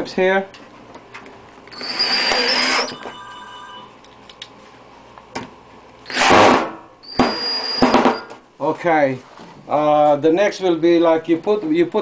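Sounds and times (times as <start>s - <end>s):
power drill driving screws: 1.7s - 3.0s, 6.1s - 8.3s.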